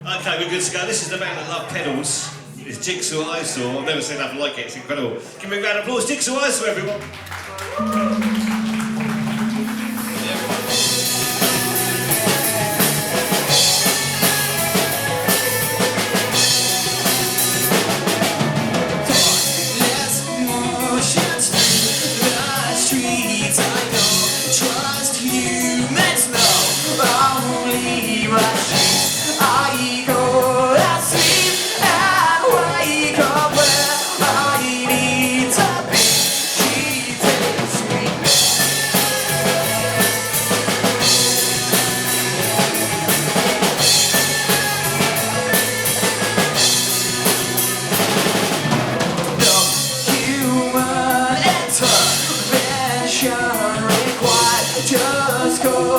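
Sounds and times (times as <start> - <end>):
electric guitar with effects: 7.7 - 55.1
drum kit: 7.7 - 55.9
rock band playing: 7.7 - 55.9
person singing: 7.8 - 12.4, 19.1 - 47.5, 49.4 - 55.9.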